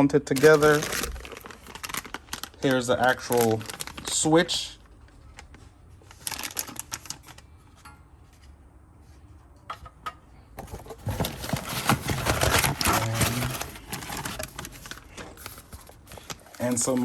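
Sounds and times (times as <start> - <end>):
packaging crinkling: 0.3 - 7.5, 10.7 - 17.0.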